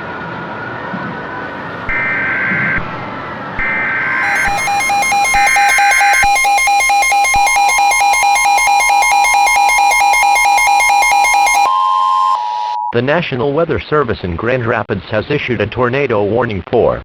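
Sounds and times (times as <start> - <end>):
steady tone: 1.8 - 13.0
screechy two-pitch digital tones: 1.9 - 2.9, 3.6 - 13.0
pulsing electronic alarm tone: 1.9 - 13.0.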